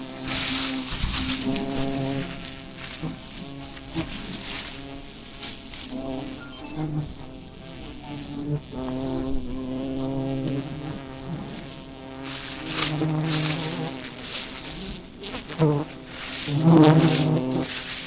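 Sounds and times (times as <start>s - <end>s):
bees buzzing: 0.0s - 18.0s.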